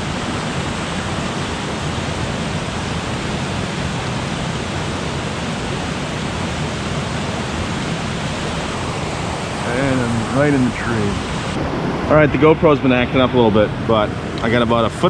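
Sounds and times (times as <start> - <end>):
creek water roaring over rocks: 0.0 - 11.9.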